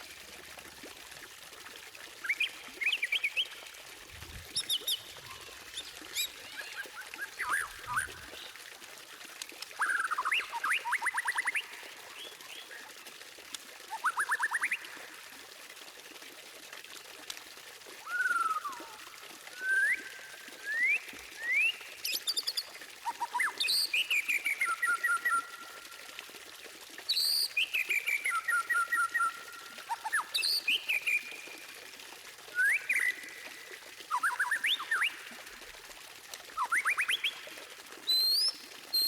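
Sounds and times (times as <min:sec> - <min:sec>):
songbird singing whistled phrases: 0:04.6 - 0:08.5, 0:09.8 - 0:12.7, 0:18.0 - 0:22.6, 0:23.2 - 0:25.6, 0:27.1 - 0:31.5, 0:32.5 - 0:33.4, 0:34.1 - 0:35.3, 0:36.6 - 0:37.5, 0:38.1 - 0:39.0.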